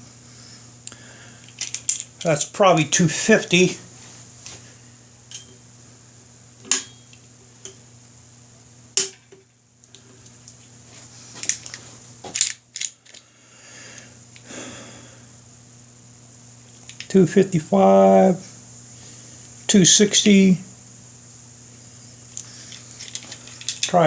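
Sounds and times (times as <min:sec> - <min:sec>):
steady low hum: 0:00.0 - 0:24.0
tool handling noises: 0:01.4 - 0:02.5, 0:22.3 - 0:24.0.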